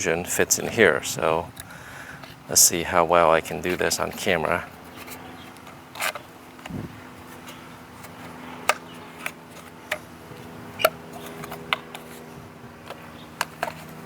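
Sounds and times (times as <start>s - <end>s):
faint hum: 0.0s - 14.0s
plastic and rubber parts clicking: 3.6s - 14.0s.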